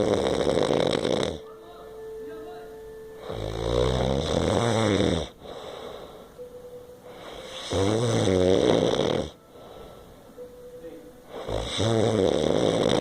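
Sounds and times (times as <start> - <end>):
person snoring loudly: 0.0 - 1.5, 3.2 - 5.7, 7.2 - 9.4, 11.3 - 13.0.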